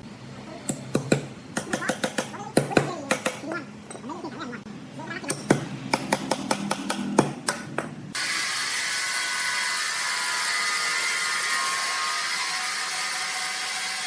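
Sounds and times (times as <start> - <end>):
high-pitched machine noise with whine: 8.1 - 14.0.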